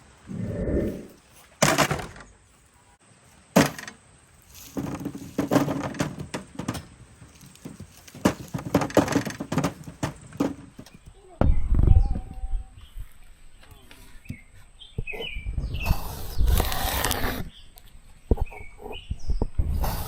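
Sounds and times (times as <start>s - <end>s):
knocks and clattering handling: 1.6s - 2.4s, 3.6s - 11.0s.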